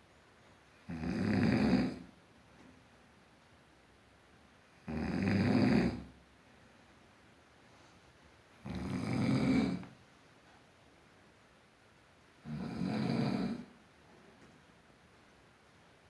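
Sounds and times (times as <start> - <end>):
person snoring: 4.9 - 6.0, 8.6 - 9.8, 12.4 - 13.7.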